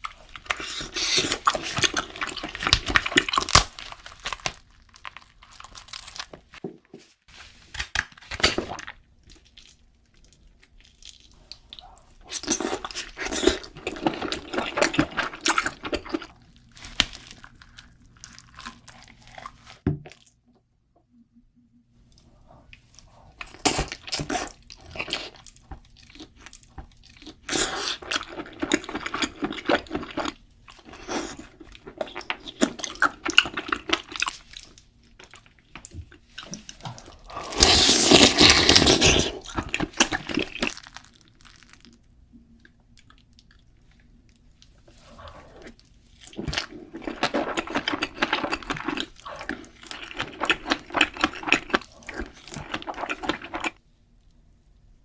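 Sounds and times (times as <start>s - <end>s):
chewing: 22.1s - 53.8s.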